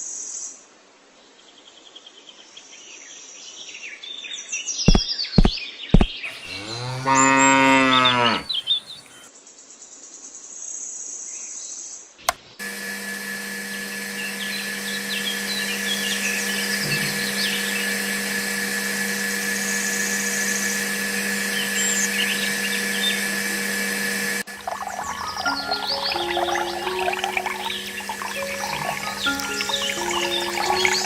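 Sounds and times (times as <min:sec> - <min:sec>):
small power tool motor running: 0:04.9 - 0:09.3, 0:12.6 - 0:31.0
faint high chirps: 0:13.0 - 0:31.0.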